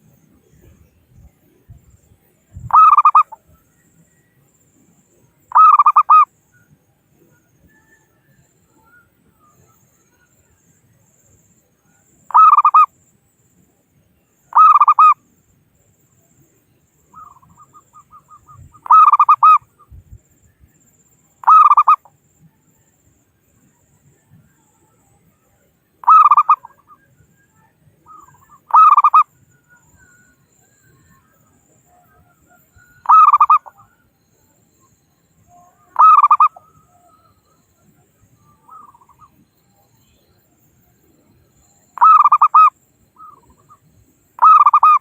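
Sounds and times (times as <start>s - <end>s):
dove cooing: 2.7s - 3.4s, 5.5s - 6.2s, 14.6s - 15.2s, 17.2s - 19.7s, 21.4s - 22.0s, 26.0s - 26.9s, 28.1s - 29.3s, 33.0s - 33.9s, 35.8s - 36.9s, 42.0s - 43.7s, 44.4s - 45.0s.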